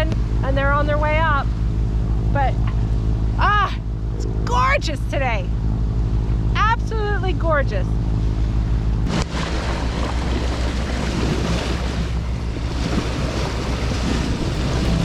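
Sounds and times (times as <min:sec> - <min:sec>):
steady low rumble: 0:00.0 - 0:15.0
wind buffeting microphone: 0:08.4 - 0:15.0
rushing water: 0:09.1 - 0:15.0.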